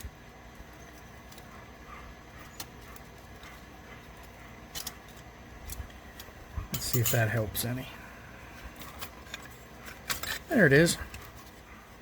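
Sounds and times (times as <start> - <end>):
low steady hum: 0.0 - 12.0.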